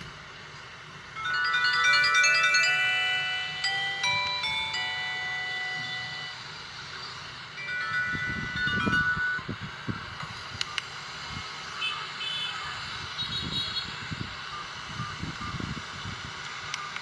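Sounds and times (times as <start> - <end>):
phone ringtone melody: 1.1 - 6.6, 7.5 - 10.1.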